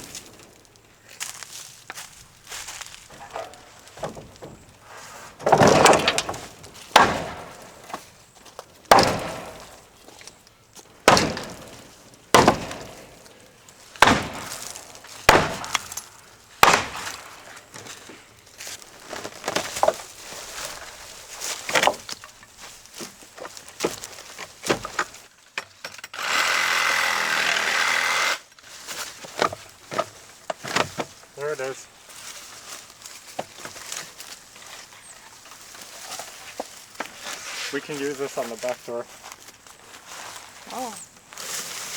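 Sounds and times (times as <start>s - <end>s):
wood cracking and clattering: 0.0s - 25.9s
heavy strikes on wood: 3.1s - 10.0s, 11.0s - 13.3s, 14.0s - 17.9s.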